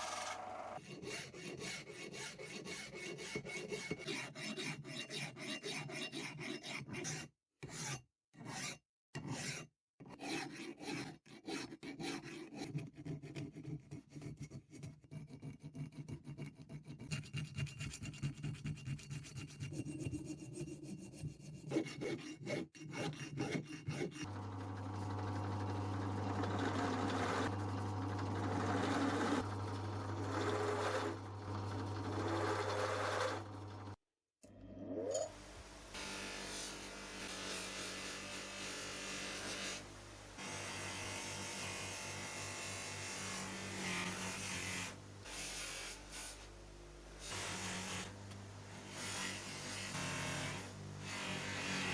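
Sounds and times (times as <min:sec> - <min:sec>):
electric tool grinding metal: 0:00.0 - 0:00.8, 0:24.2 - 0:34.0, 0:40.4 - 0:46.5, 0:47.2 - 0:51.9.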